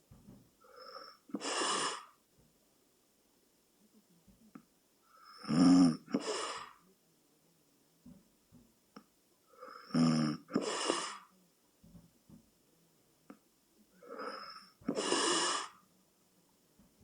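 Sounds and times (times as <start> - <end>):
rushing hissy breath: 0.6 - 2.2, 6.1 - 6.8, 10.5 - 11.3, 14.0 - 15.8
person snoring: 5.3 - 6.8, 9.7 - 11.3, 14.0 - 15.8.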